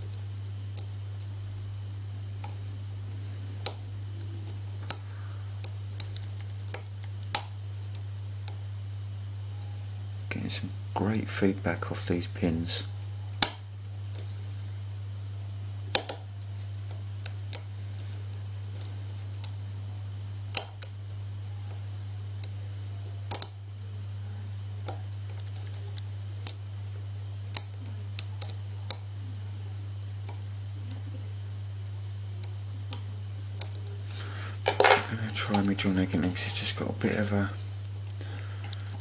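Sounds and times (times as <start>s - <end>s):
steady low hum: 0.0s - 39.0s.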